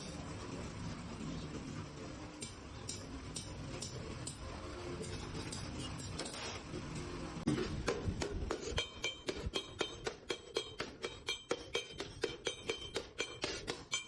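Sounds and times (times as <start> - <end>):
hammer striking sheet iron: 7.5 - 14.0.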